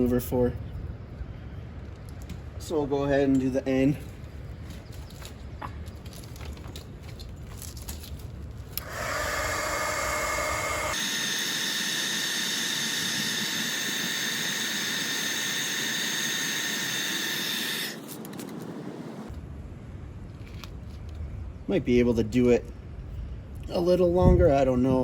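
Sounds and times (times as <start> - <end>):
heat gun blower whine: 8.8 - 19.3.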